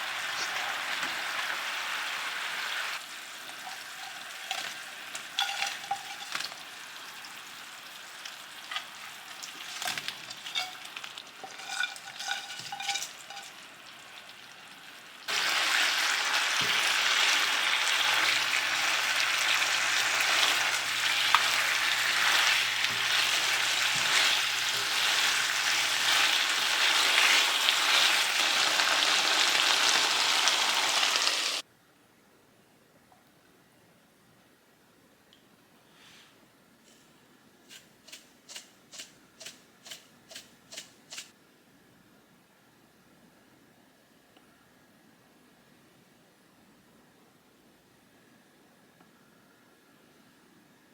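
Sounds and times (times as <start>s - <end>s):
food sizzling in hot oil: 0.0s - 31.6s
utensil scraping a pan: 3.6s - 6.6s, 8.7s - 13.6s, 16.6s - 29.0s.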